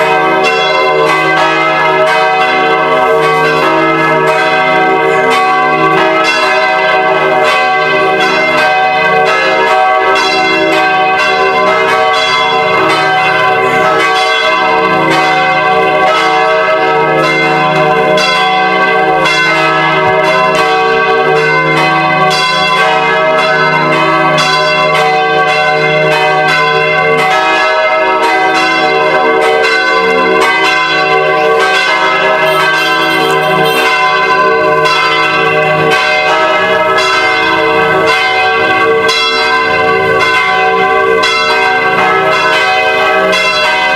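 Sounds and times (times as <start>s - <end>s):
church bells ringing: 0.0s - 43.9s.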